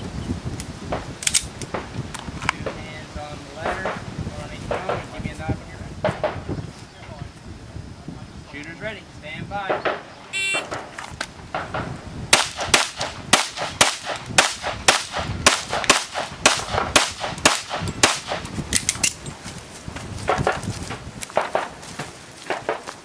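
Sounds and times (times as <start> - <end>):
shot timer beep: 10.4 - 10.6
rapid gunshots: 12.3 - 18.5.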